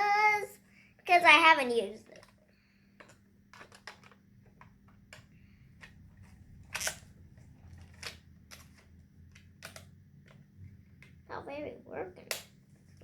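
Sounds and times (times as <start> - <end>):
plastic toy camera clicks: 2.0 - 2.4, 6.7 - 7.1, 7.8 - 10.4.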